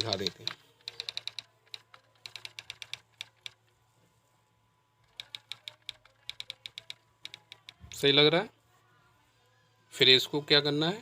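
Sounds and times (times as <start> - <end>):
typewriter key clicks: 5.1 - 7.8.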